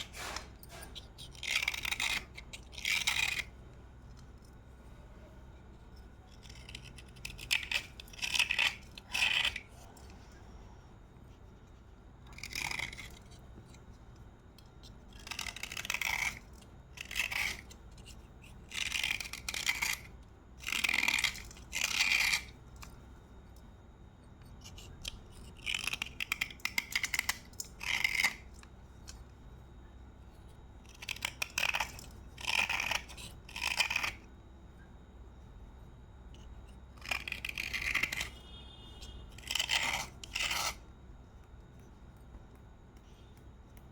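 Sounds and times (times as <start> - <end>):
slate pencil crunching when chewed: 39.0 - 40.9.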